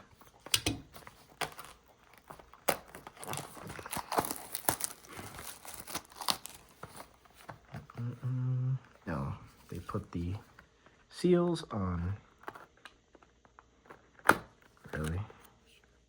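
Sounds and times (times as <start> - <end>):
packaging crinkling and ripping: 0.4 - 7.4.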